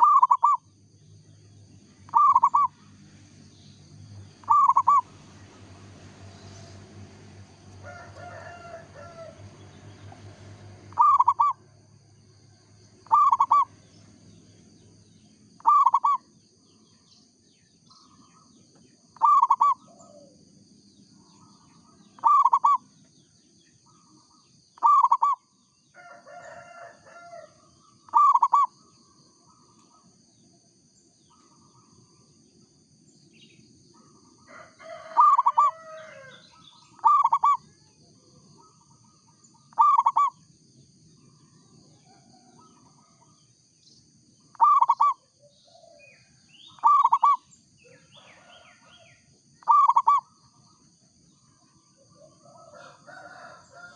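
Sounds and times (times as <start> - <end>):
dove cooing: 0.0 - 0.6, 2.1 - 2.8, 4.4 - 5.1, 10.9 - 11.6, 13.0 - 13.7, 15.6 - 16.2, 19.2 - 20.4, 22.2 - 22.8, 24.8 - 25.4, 28.1 - 28.7, 34.8 - 37.8, 38.6 - 40.4, 44.5 - 49.0, 49.6 - 50.4
bird twittering: 0.0 - 0.7, 2.0 - 2.8, 4.4 - 5.1, 10.9 - 11.6, 13.0 - 14.0, 15.6 - 16.4, 19.2 - 20.4, 21.3 - 22.9, 23.8 - 25.5, 27.8 - 30.0, 35.0 - 37.8, 38.6 - 40.5, 44.5 - 50.6.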